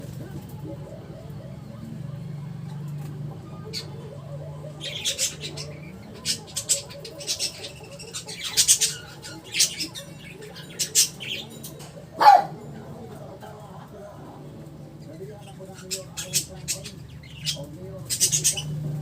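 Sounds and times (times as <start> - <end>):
small pets squawking and squeaking: 3.4 - 12.0, 15.6 - 19.0.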